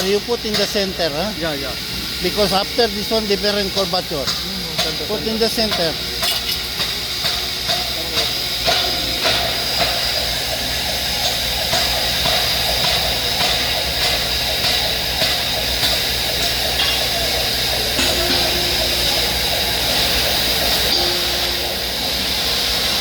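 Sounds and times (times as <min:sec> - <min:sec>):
machinery hiss and hum: 0:00.0 - 0:23.0.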